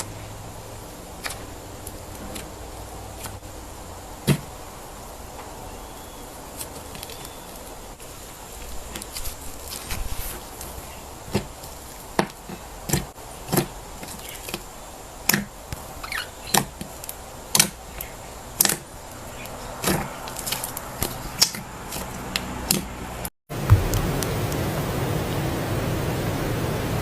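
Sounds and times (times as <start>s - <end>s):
steady hiss: 0.0s - 27.0s.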